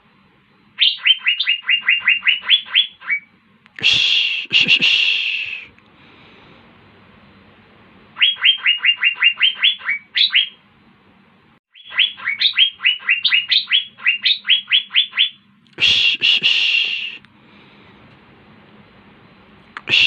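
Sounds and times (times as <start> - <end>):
harsh rasping bird call: 0.8 - 5.7, 8.2 - 10.6, 11.7 - 17.2.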